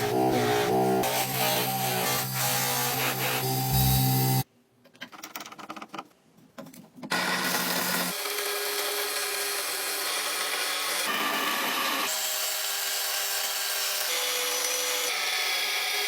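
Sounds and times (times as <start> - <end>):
power tool sanding: 0.0 - 4.4.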